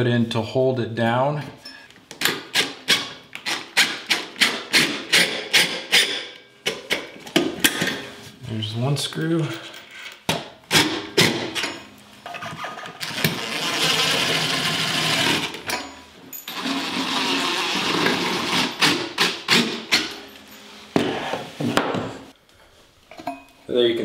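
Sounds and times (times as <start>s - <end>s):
power drill driving screws: 12.7s - 15.7s, 16.4s - 20.2s.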